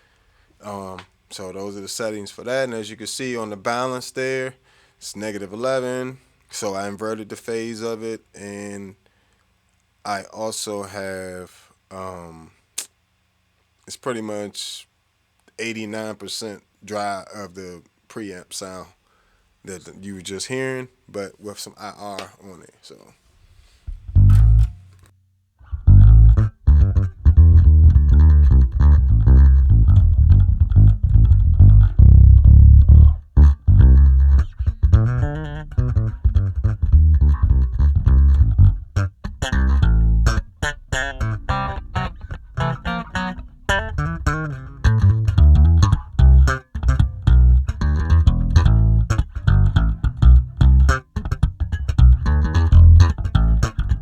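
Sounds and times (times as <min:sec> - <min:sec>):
electric bass plucked notes: 0:23.9 - 0:24.8, 0:25.6 - 0:54.0.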